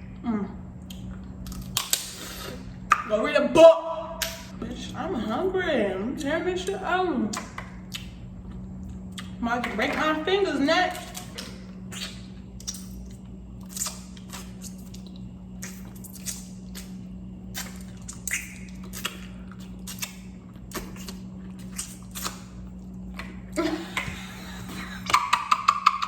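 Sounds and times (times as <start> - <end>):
low electrical hum: 0.0 - 26.0
food crunching and squishing: 0.8 - 3.0, 7.3 - 9.4, 10.9 - 23.5
chewing: 7.3 - 9.4, 11.0 - 23.4.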